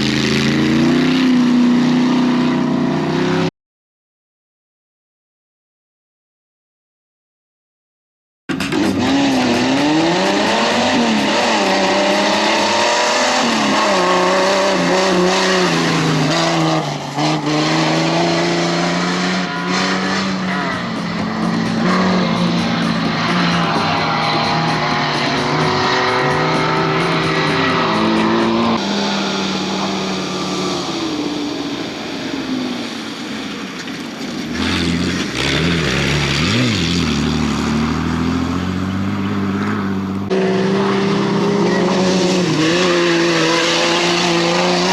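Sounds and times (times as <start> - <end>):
engine revving hard: 8.6 - 31.2, 34.5 - 44.9.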